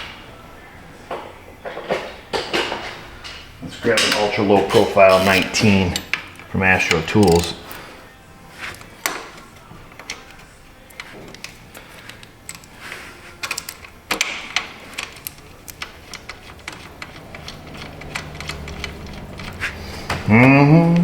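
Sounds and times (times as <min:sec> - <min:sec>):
hand tools clinking on metal: 0:03.7 - 0:07.8.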